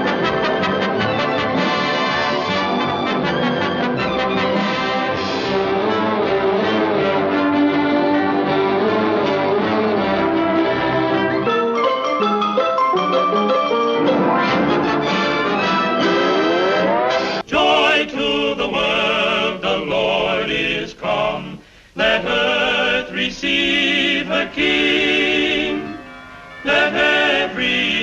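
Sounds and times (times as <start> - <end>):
orchestral brass music: 0.0 - 17.5, 23.6 - 28.0.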